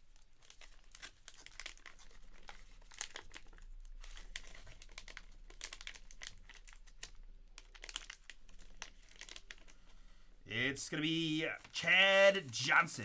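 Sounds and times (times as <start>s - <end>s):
plastic packaging crinkling: 0.4s - 9.8s.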